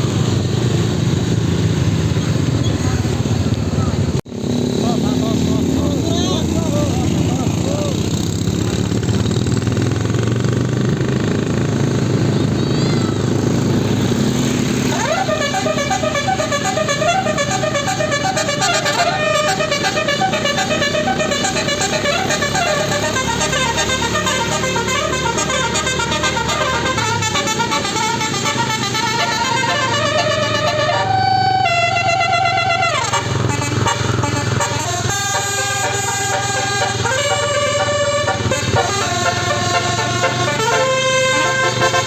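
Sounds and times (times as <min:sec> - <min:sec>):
bus engine rumbling: 0:00.0 - 0:42.0
musical air horn melody: 0:14.7 - 0:42.0.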